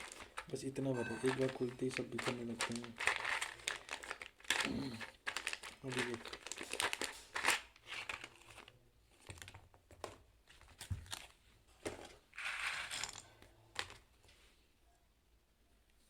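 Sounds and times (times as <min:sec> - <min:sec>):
plastic packaging crinkling: 0:00.0 - 0:09.7.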